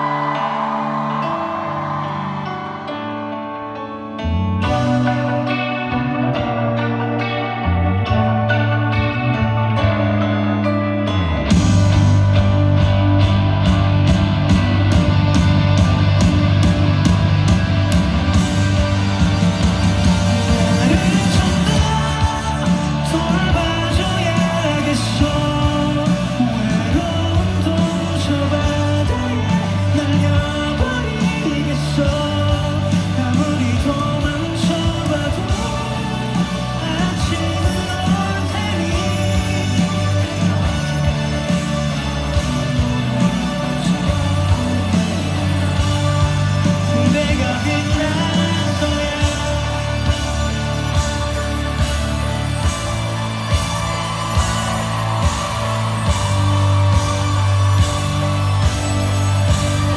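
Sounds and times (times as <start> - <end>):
drums: 0.0 - 59.9
live rock band playing: 0.0 - 59.9
picked electric guitar: 0.0 - 59.9
person singing: 18.4 - 59.9.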